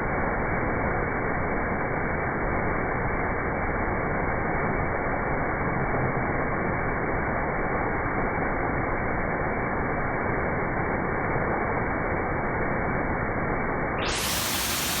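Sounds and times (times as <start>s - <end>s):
waterfall rushing: 14.0s - 15.0s.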